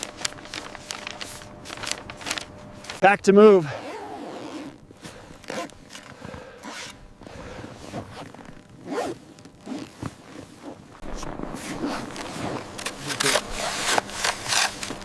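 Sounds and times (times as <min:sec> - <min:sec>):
scraping and rustling strokes: 0:00.0 - 0:03.0, 0:07.6 - 0:15.0.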